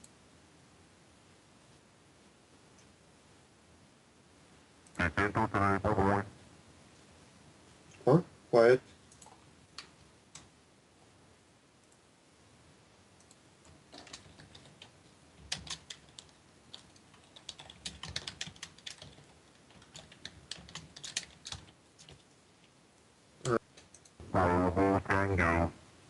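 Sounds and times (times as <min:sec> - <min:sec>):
computer keyboard typing: 0:09.1 - 0:09.4, 0:13.2 - 0:22.3.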